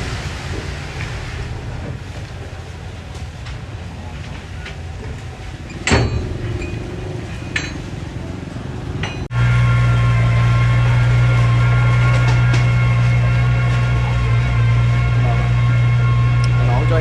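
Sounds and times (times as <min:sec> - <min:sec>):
heavy machinery diesel engine: 0:00.0 - 0:17.0
loud metallic clank: 0:05.7 - 0:08.0.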